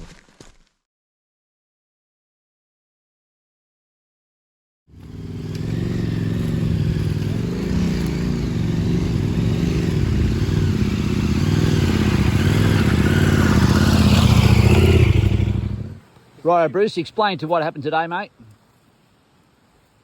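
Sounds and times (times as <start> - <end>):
motorcycle engine running: 4.9 - 16.0.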